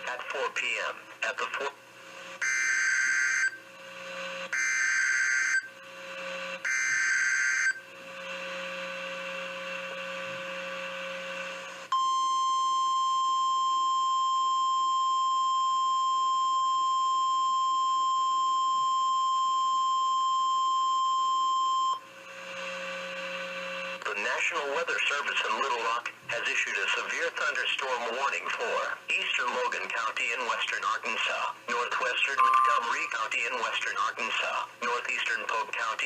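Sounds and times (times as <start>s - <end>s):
faint radio hum: 0.0s - 1.8s
steady warning alarm tone: 2.4s - 7.9s, 32.4s - 33.2s.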